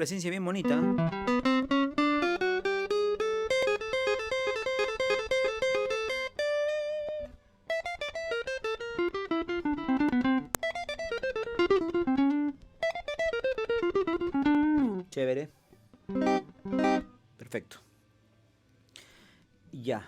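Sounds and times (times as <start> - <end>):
clean electric guitar melody: 0.6 - 15.1, 16.0 - 17.2.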